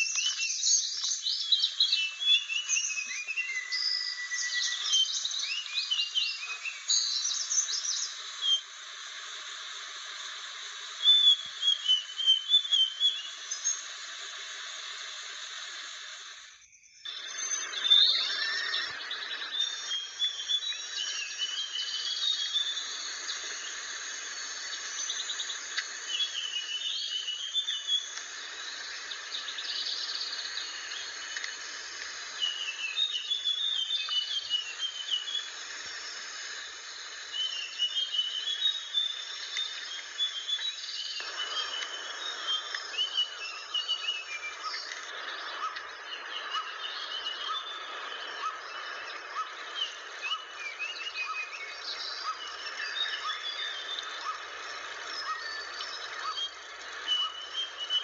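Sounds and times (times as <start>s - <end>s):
bird singing warbling phrases: 0.0s - 8.6s, 11.0s - 13.8s, 16.8s - 23.8s, 24.6s - 28.2s, 32.4s - 35.6s, 37.3s - 58.0s
background hiss of insects: 0.0s - 58.0s.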